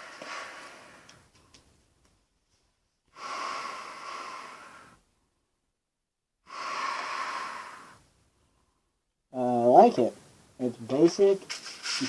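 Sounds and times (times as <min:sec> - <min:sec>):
rasping breaths through gas mask: 0:00.0 - 0:01.3, 0:03.1 - 0:05.0, 0:06.5 - 0:08.1.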